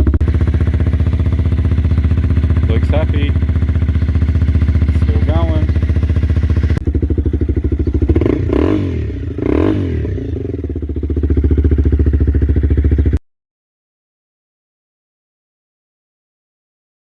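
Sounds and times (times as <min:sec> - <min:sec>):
motorcycle engine idling and revving: 0:00.0 - 0:13.2.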